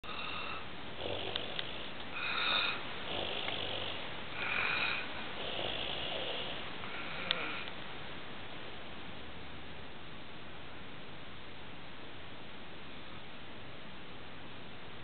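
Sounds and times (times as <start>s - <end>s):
person snoring: 0.0s - 7.7s.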